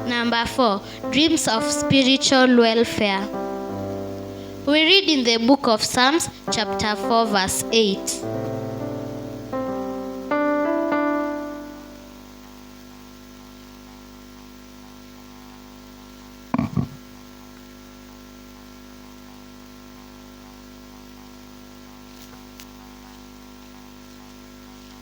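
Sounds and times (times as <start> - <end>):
keyboard chords: 0.0 - 12.4
steady electrical hum: 0.0 - 25.0.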